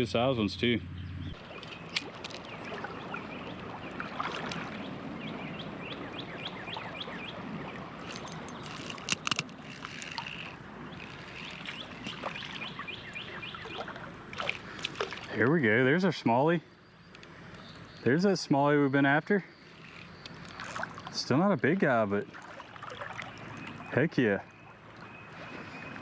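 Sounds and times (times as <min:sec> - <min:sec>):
small birds chirping: 0:00.5 - 0:26.0
creek water running: 0:01.4 - 0:16.4, 0:18.1 - 0:26.0
sharp clicks: 0:08.0 - 0:12.7.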